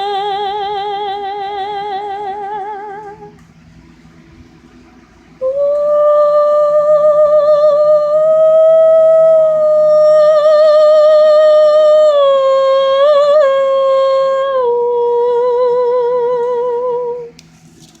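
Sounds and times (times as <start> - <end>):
person humming a sad tune: 5.4 - 17.3.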